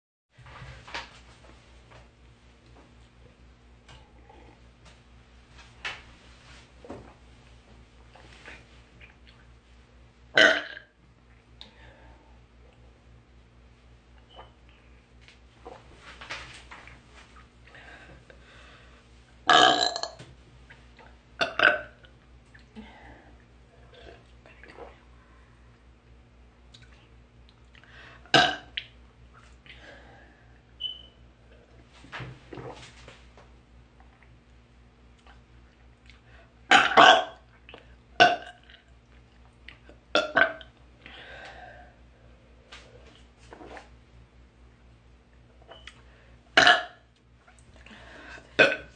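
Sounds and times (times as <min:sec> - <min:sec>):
woman burping: 0:10.4 - 0:10.9, 0:19.5 - 0:20.2, 0:36.7 - 0:37.3, 0:46.6 - 0:47.0, 0:48.6 - 0:48.9.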